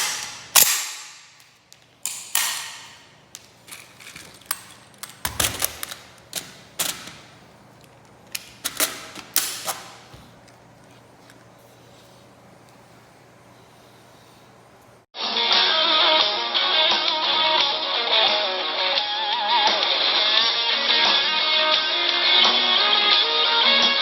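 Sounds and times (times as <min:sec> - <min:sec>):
metallic clicks of gun parts: 0:00.0 - 0:07.2.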